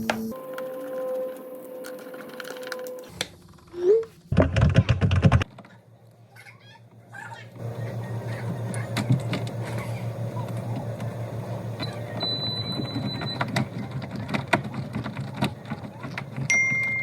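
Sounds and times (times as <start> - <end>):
sharp clicks and knocks: 4.3 - 5.8, 11.8 - 16.9
small motor running: 7.6 - 16.5.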